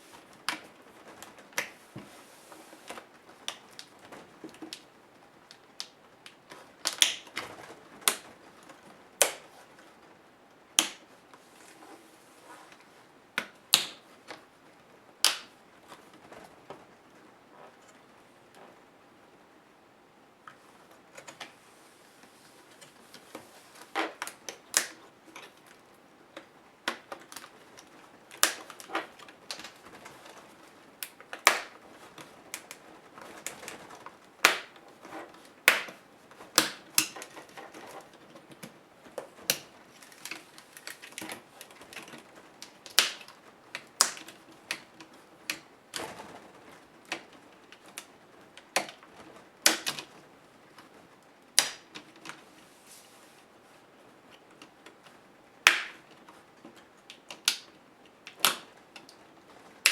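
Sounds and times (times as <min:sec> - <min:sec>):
laptop parts clicking and tapping: 0:35.6 - 0:46.1, 0:56.8 - 0:59.2.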